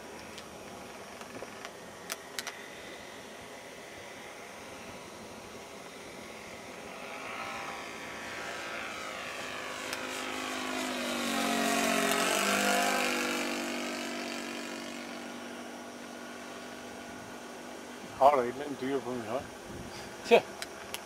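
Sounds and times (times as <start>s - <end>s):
model airplane flying past: 0.0s - 20.4s.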